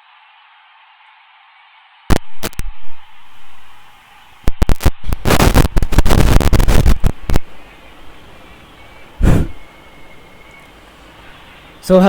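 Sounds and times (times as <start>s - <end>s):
loud bangs and cracks: 4.5s - 7.5s.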